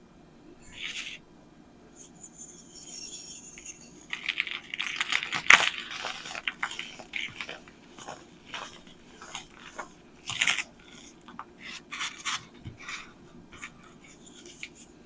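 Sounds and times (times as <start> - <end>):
faint high squeak: 2.0 - 4.6
baking soda crunching: 2.0 - 15.0.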